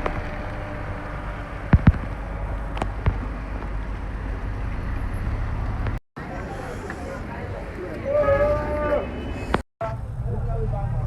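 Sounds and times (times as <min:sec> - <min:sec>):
low outdoor rumble: 0:00.0 - 0:11.0
sharp knocks: 0:01.7 - 0:02.2.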